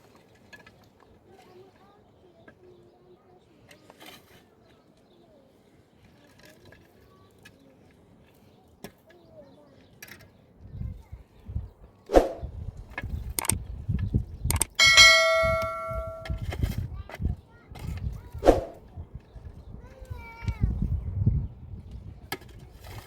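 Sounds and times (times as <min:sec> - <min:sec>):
metal object ringing like a bell: 0:14.8 - 0:16.4.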